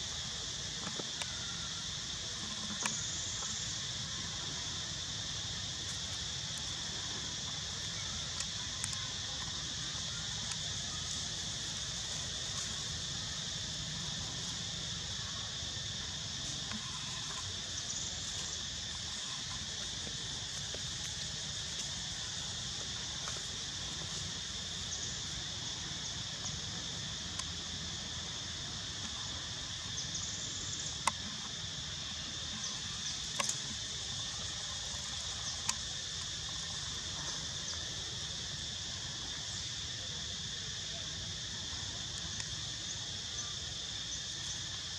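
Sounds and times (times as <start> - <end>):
insects buzzing: 0.0 - 44.9.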